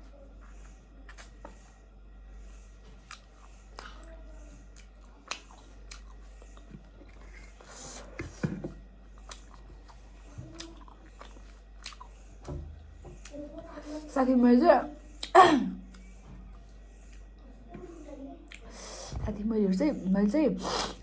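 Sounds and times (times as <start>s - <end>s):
person chewing food: 0.4s - 13.6s.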